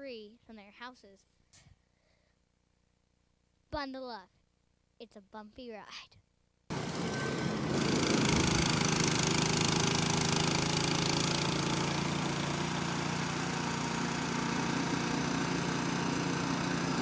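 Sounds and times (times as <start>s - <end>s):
engine running steadily: 6.7s - 17.0s.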